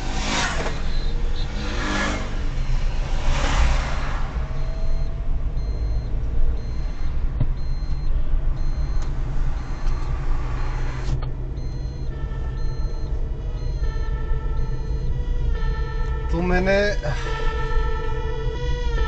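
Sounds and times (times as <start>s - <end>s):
tyre noise on road: 0.0s - 12.4s
car engine rumble: 0.0s - 19.0s.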